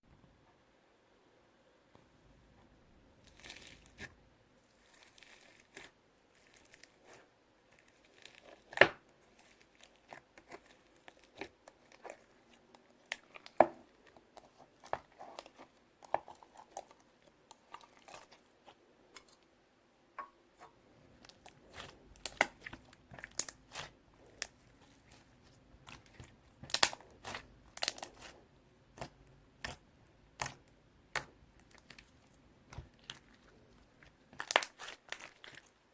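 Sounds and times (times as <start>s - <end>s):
slime crackling and popping: 21.2s - 35.8s.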